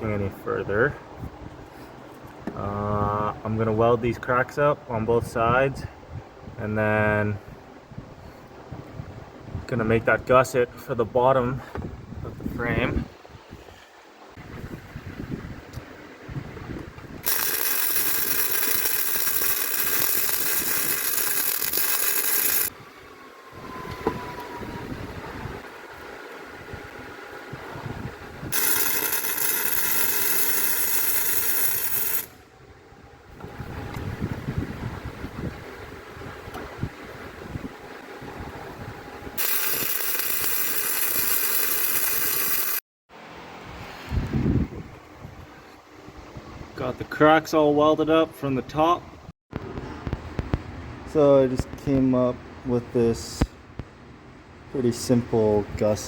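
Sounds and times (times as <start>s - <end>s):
welder hissing: 17.2s - 22.7s, 28.5s - 32.4s, 39.4s - 42.8s.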